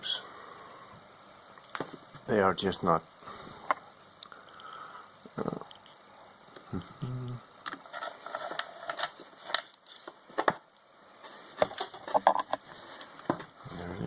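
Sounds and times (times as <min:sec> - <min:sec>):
short voice hum: 0:06.7 - 0:07.5.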